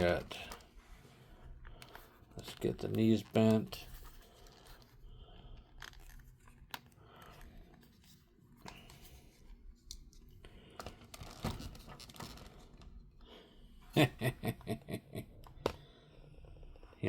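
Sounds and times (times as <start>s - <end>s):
rubbing and handling noise: 0.0s - 14.0s.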